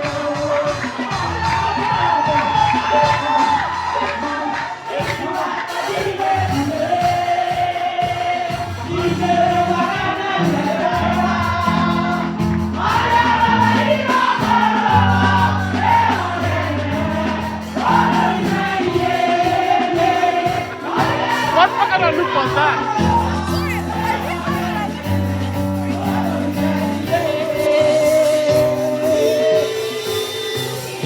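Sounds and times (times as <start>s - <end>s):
congregation and choir singing: 0.0s - 31.0s
percussion: 0.0s - 31.0s
bass line: 21.2s - 29.5s.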